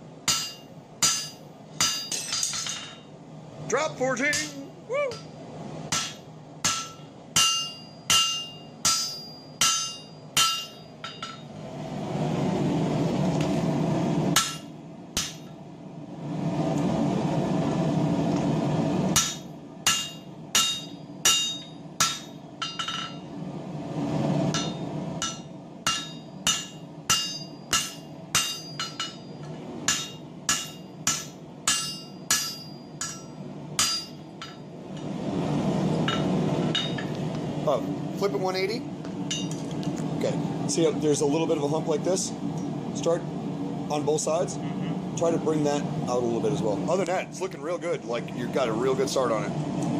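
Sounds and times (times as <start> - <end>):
hammer striking steel on anvil: 0.2 - 3.0, 4.2 - 5.3, 5.9 - 11.5, 14.4 - 15.6, 19.1 - 23.3, 24.5 - 35.1, 36.1 - 37.1, 39.3 - 39.6.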